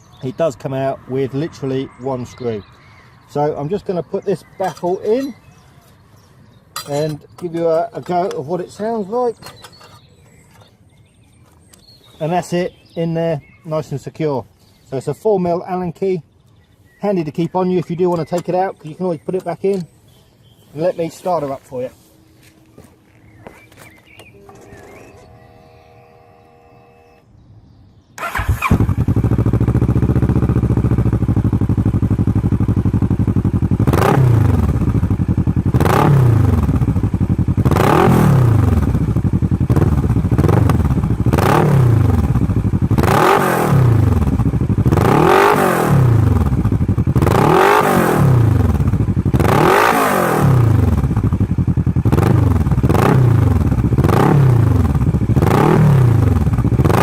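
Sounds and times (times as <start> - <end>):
motorcycle engine revving: 21.2 - 27.3, 28.2 - 57.0
exhaust backfire: 28.2 - 57.0.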